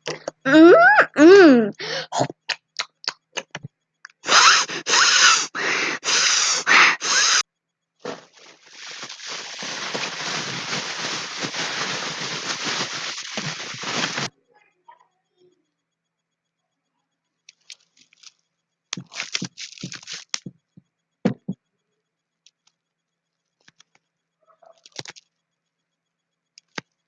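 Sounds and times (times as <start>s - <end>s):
child squealing: 0.4s - 2.1s, 4.2s - 7.4s
child rasping hiss: 0.5s - 2.1s, 4.2s - 7.4s.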